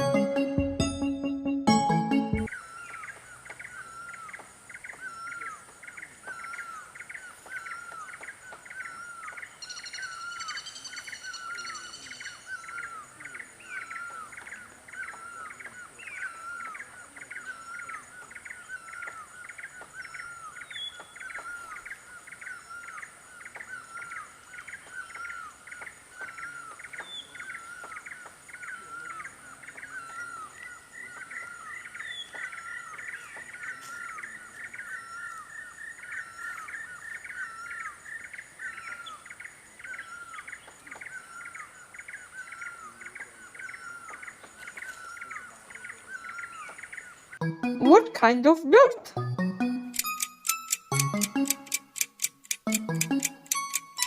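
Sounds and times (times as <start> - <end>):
bird chirping call: 0.0 - 25.5, 42.4 - 54.0.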